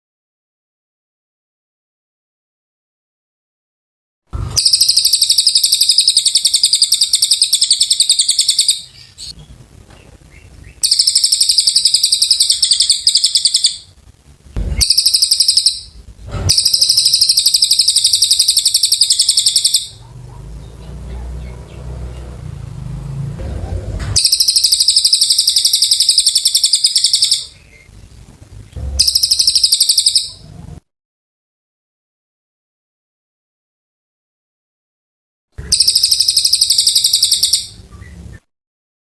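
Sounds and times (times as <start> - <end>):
songbird high-pitched trills: 4.4 - 9.4, 10.3 - 13.9, 14.7 - 22.4, 24.2 - 27.9, 29.0 - 30.5, 35.7 - 38.4
low knocks: 14.6 - 14.9, 20.1 - 24.2.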